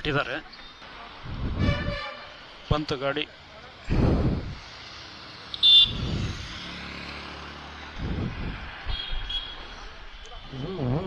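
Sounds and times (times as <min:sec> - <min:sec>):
motorcycle engine revving: 0:04.0 - 0:09.0.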